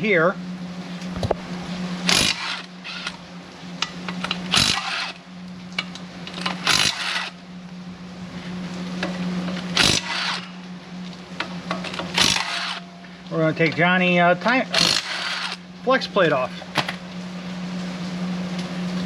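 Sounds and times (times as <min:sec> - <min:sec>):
steady low hum: 0:00.0 - 0:19.0
impact wrench bursts: 0:02.0 - 0:03.2, 0:04.2 - 0:05.2, 0:06.2 - 0:07.4, 0:09.6 - 0:10.6, 0:11.8 - 0:13.0, 0:14.7 - 0:15.6.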